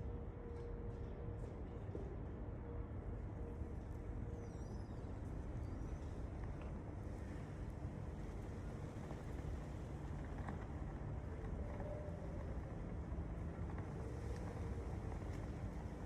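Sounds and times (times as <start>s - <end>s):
low outdoor rumble: 5.2s - 16.0s.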